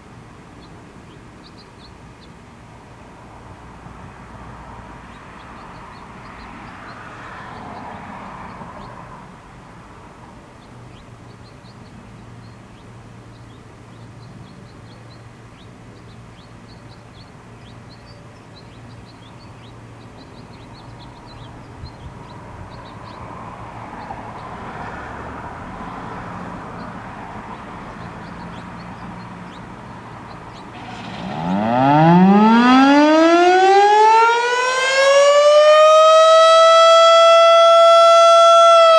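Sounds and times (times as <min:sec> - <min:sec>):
faint background noise: 0:00.0 - 0:38.9
siren winding up: 0:31.2 - 0:38.9.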